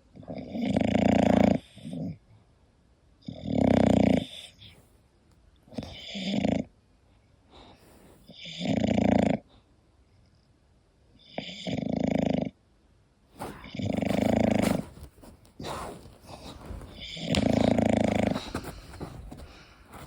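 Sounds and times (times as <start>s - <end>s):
dog snoring: 0.2s - 2.2s, 3.2s - 4.8s, 5.7s - 6.7s, 7.6s - 9.5s, 11.2s - 12.6s, 13.4s - 20.0s
dog breathing: 5.7s - 6.7s, 7.5s - 9.5s, 13.4s - 20.0s.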